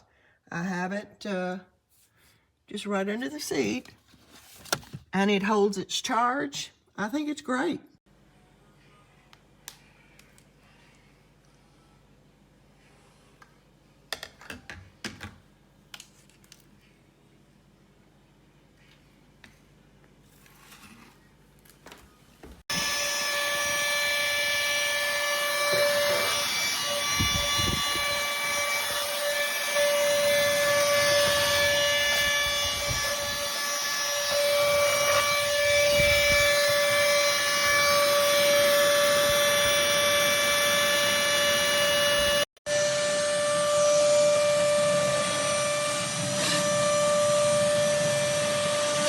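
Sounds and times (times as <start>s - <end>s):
mini vacuum motor whine: 22.7s - 49.0s.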